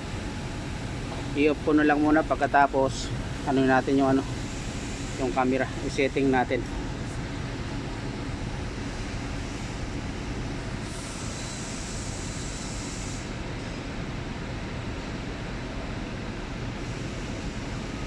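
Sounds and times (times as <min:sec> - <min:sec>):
hiss: 0:04.2 - 0:05.6, 0:10.8 - 0:13.8.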